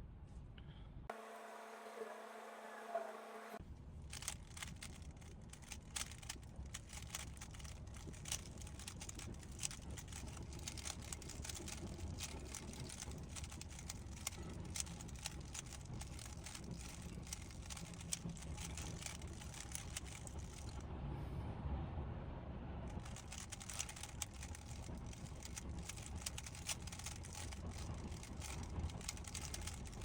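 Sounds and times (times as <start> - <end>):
low background rumble: 3.6 - 30.0
puzzle cube plastic clicks: 4.1 - 20.8, 23.0 - 30.0.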